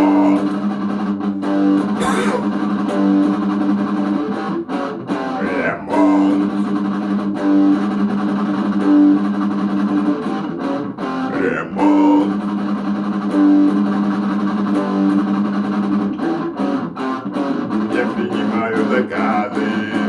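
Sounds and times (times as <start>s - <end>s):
singer calling out: 0.0s - 0.6s, 2.0s - 2.6s, 5.4s - 6.7s, 11.3s - 12.4s, 17.9s - 20.0s
guitars over bass line: 0.0s - 20.0s.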